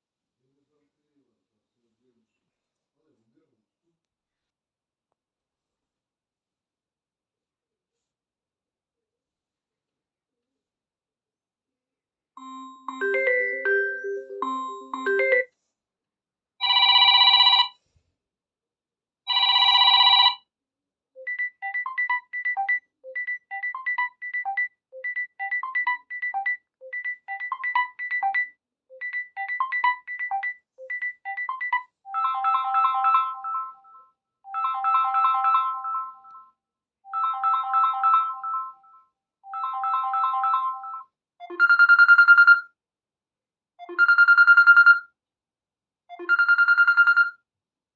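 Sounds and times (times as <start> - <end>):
electronic ringtones: 12.4 - 15.5, 21.2 - 36.5, 37.1 - 42.5.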